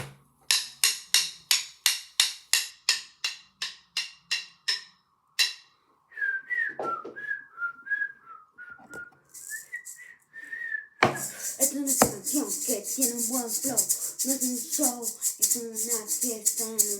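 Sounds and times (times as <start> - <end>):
whistled tune: 6.1 - 11.6
loud dense rattling beat: 11.1 - 16.9.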